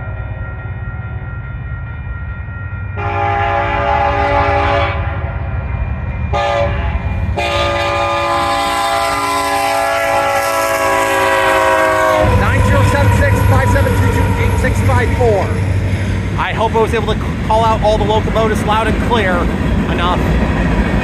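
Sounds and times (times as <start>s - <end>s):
diesel train rumble: 0.0s - 21.0s
locomotive air horn: 3.0s - 5.2s, 6.4s - 15.6s.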